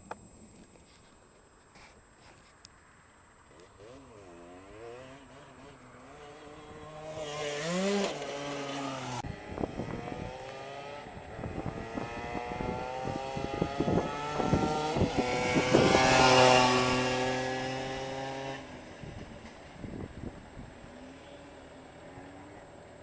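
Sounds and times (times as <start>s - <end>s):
motorbike engine revving: 3.5s - 21.5s.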